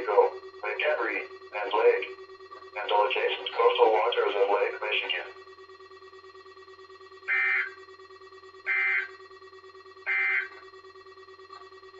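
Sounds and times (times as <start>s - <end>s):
faint radio hum: 0.0s - 5.4s
shrill digital data bursts: 0.0s - 5.4s.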